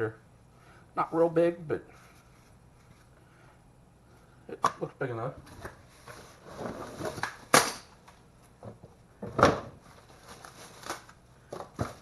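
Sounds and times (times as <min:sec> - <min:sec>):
rustling: 0:01.9 - 0:03.6, 0:09.8 - 0:12.0.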